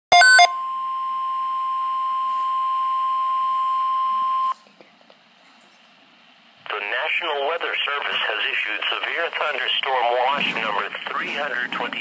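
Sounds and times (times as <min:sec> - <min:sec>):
steady alert tone: 0:00.1 - 0:00.5
stepped electronic tones: 0:00.1 - 0:00.5
faint radio hiss: 0:04.6 - 0:12.0.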